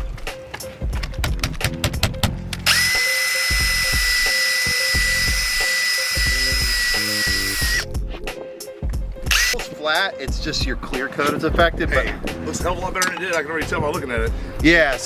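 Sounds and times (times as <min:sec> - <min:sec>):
power polisher whining: 0:02.6 - 0:07.8, 0:09.3 - 0:09.6.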